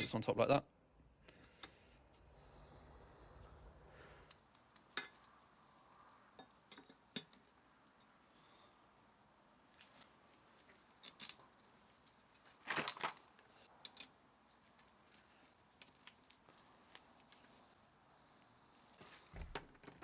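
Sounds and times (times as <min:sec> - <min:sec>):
metallic clicks of gearbox parts: 0:15.8 - 0:16.4.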